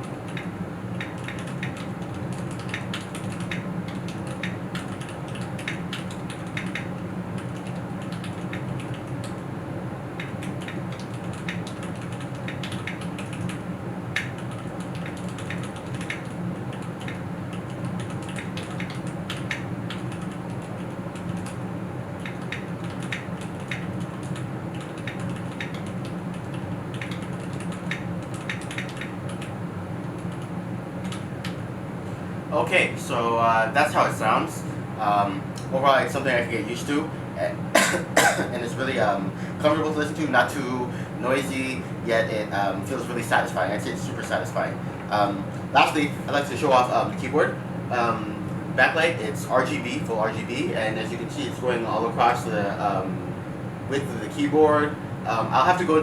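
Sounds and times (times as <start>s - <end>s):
steady low hum: 0.0s - 56.0s
mechanical keyboard typing: 0.3s - 9.1s, 10.2s - 13.6s, 14.2s - 21.6s, 22.2s - 29.5s.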